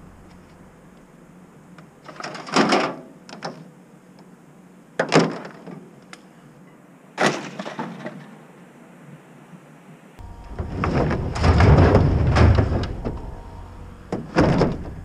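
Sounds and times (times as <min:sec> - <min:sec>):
metallic ring: 0:10.2 - 0:15.0
scrap metal crashing: 0:10.3 - 0:15.0.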